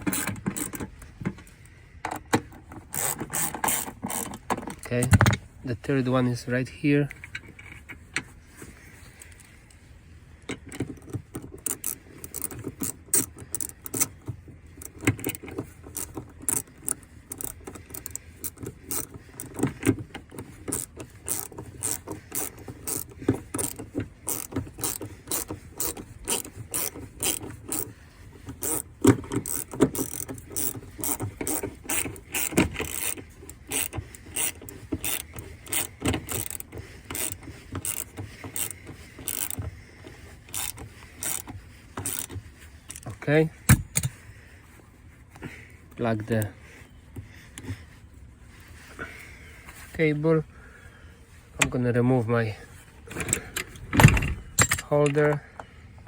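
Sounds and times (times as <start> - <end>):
socket ratchet wrench clicking: 0.0 - 1.0, 2.1 - 5.4, 10.5 - 43.1.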